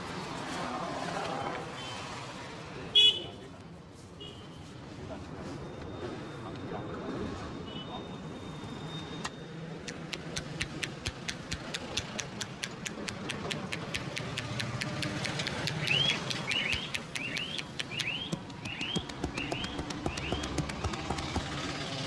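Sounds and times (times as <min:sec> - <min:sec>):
bird chirping: 0:09.9 - 0:21.2
rapid percussive massage taps: 0:09.9 - 0:22.0.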